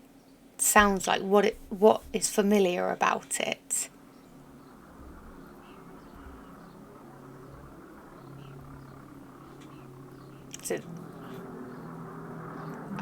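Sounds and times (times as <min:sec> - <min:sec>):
faint low drone with hum: 0:03.9 - 0:13.0.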